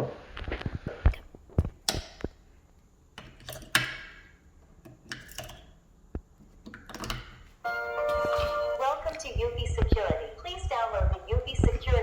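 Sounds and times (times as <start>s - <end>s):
hard objects clicking and knocking: 3.1s - 7.5s.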